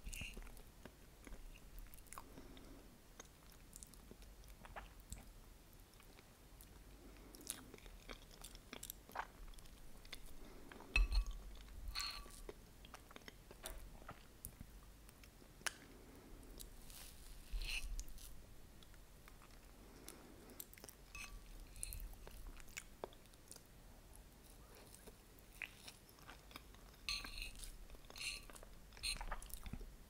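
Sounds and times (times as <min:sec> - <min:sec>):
wet chewing mouth sounds: 0:06.0 - 0:11.4.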